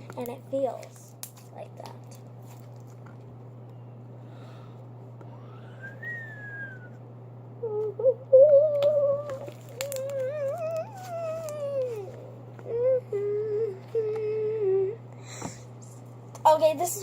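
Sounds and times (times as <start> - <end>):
steady low hum: 0.0 - 17.0
girl humming a tune: 5.3 - 6.9, 7.5 - 15.5.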